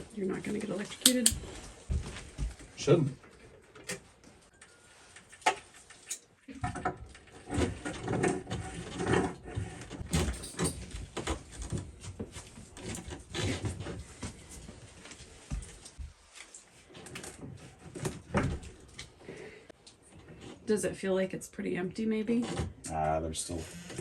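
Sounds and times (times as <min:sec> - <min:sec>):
clicks knocks and clattering of work: 0:01.0 - 0:01.4, 0:05.4 - 0:11.8.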